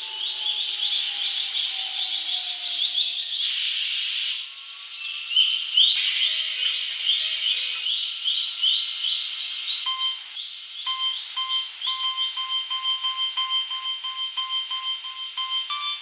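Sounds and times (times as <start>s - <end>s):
level crossing warning bells: 7.2s - 7.8s, 10.9s - 16.0s.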